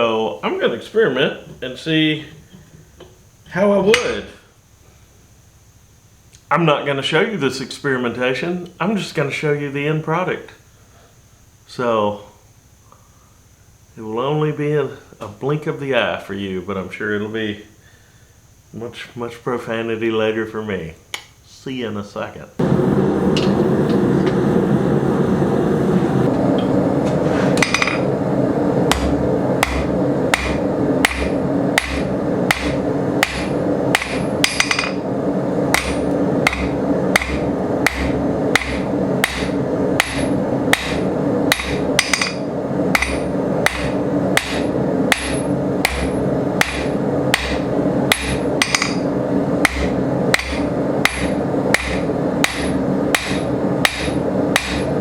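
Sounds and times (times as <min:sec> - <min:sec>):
steady background roar: 0:22.6 - 0:55.0
hammer striking steel on anvil: 0:27.6 - 0:28.1, 0:28.9 - 0:35.0, 0:35.7 - 0:55.0.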